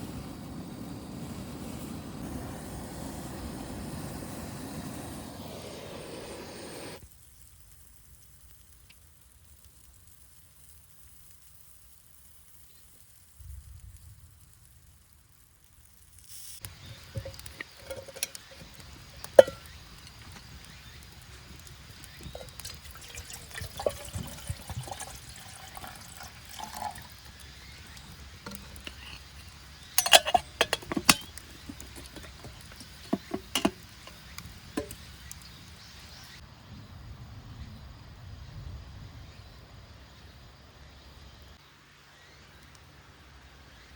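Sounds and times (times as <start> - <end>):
faint steady hiss: 0.0 - 36.7
sharp clinks: 17.1 - 19.7.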